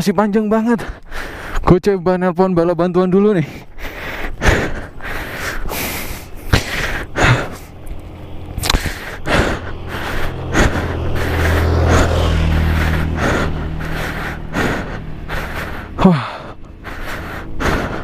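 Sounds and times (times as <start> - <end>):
man breathing hard: 0.7 - 1.7, 3.4 - 18.0
low engine hum: 3.4 - 18.0.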